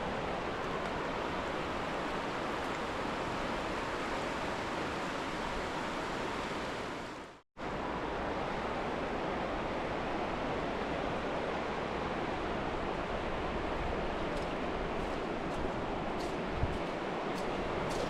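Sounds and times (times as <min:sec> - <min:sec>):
river water rushing: 0:00.0 - 0:18.0.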